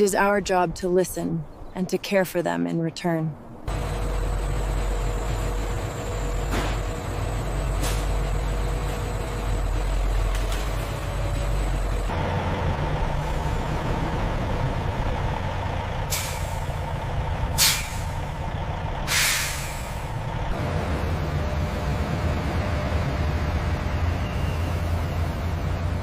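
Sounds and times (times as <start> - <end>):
heavy engine running: 3.7 - 26.0
air hissing: 17.6 - 18.2, 19.0 - 20.1.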